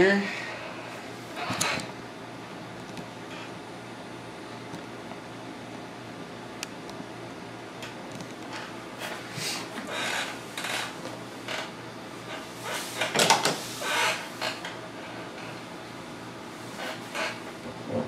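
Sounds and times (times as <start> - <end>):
rubbing and scraping handling noises: 12.2 - 14.6.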